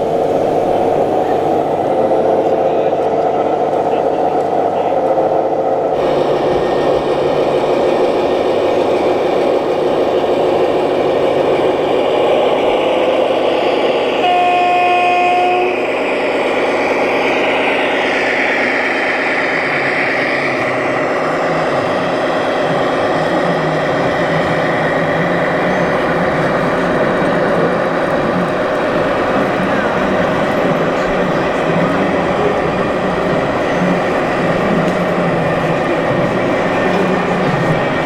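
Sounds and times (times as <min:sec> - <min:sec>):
loud background din: 0:00.0 - 0:38.0
toy vehicle horn: 0:14.2 - 0:15.8.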